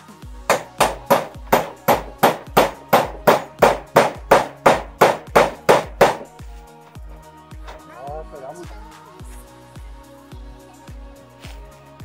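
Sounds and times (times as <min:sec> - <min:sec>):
hammer blows on wood: 0:00.5 - 0:06.4.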